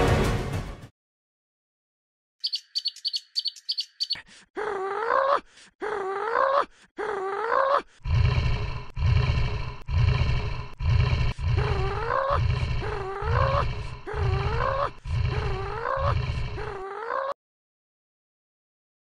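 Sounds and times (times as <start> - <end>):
looped growl sound effect: 8.0 - 17.4.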